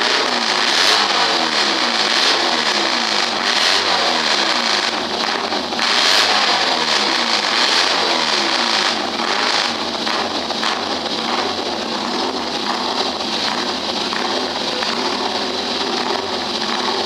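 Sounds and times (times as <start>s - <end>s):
motorcycle engine revving: 0.0s - 17.0s.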